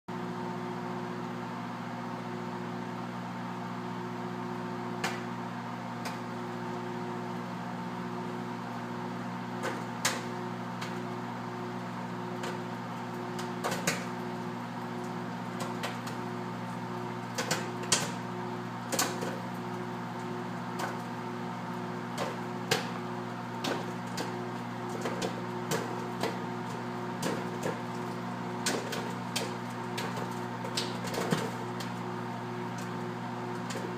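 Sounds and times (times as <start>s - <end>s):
microwave oven humming: 0.1s - 33.9s
popcorn popping: 5.0s - 6.5s, 9.5s - 11.3s, 12.2s - 33.9s.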